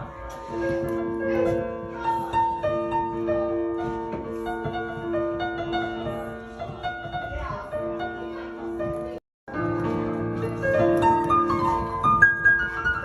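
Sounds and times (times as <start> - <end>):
piano melody: 0.0 - 13.0.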